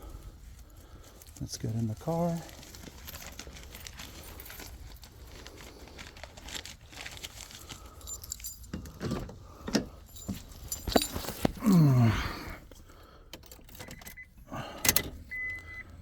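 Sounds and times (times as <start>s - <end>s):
car keys jangling: 2.2s - 5.1s, 7.6s - 15.8s.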